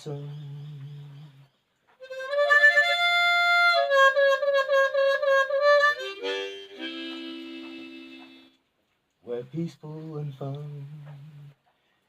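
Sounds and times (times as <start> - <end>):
harmonica melody: 2.0 - 8.6.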